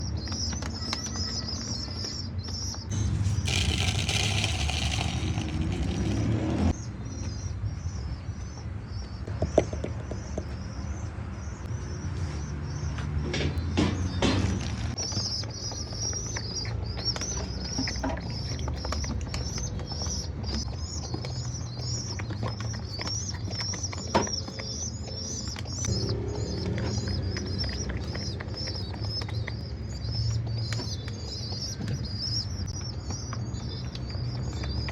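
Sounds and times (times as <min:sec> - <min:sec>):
pigeon wings flapping: 0:03.5 - 0:06.8.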